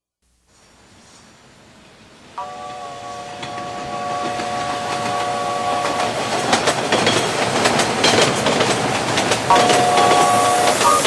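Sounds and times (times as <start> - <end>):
train horn chord: 2.4 - 6.4, 9.5 - 11.0
train wheels clattering over rail joints: 3.3 - 11.0.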